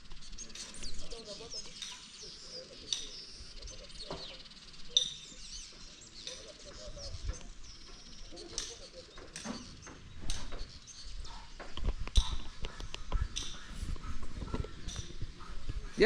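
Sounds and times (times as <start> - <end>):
small birds chirping: 0.0 - 16.0.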